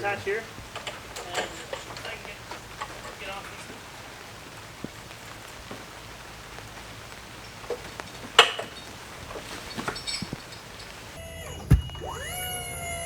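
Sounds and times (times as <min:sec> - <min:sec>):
heavy rain hissing: 0:00.0 - 0:11.2
knocks and clinks: 0:00.7 - 0:03.7, 0:07.4 - 0:12.2.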